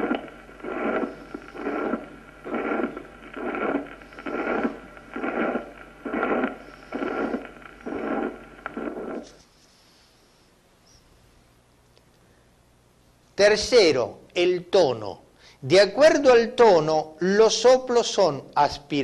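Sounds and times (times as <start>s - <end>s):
heart murmur: 0.0s - 9.4s.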